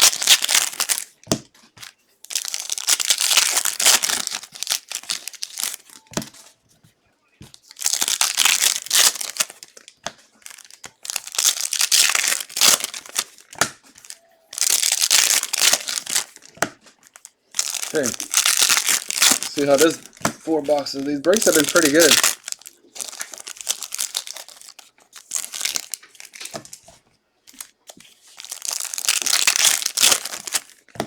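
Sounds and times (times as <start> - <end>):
plastic wrapping tearing and crinkling: 0.0 - 1.2, 2.2 - 6.0, 7.5 - 26.9, 27.5 - 31.0.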